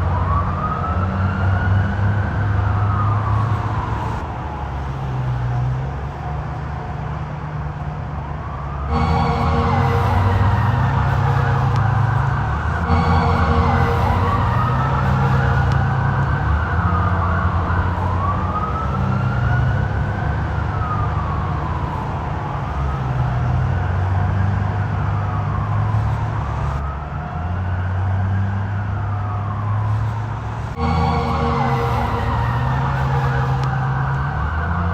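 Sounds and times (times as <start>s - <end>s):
police siren wailing: 0.0s - 6.8s, 8.2s - 34.9s
low rumble: 8.9s - 17.4s, 30.8s - 34.5s.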